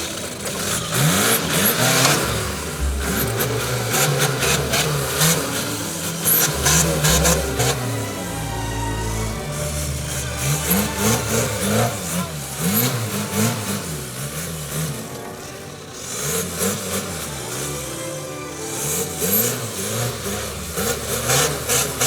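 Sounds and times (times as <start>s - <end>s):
off-road engine revving: 0.0s - 22.0s.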